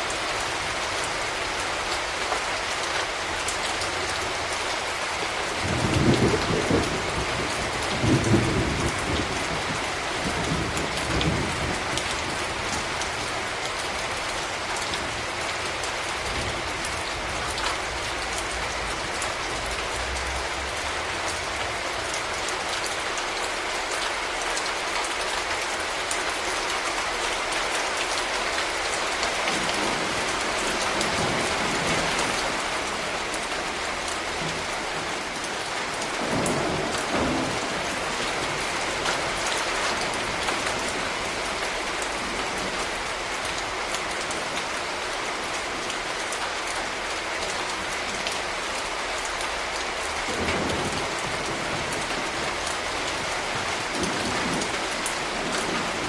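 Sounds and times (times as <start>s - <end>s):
rain pattering: 0.0s - 56.0s
thunder rumbling: 5.6s - 13.1s.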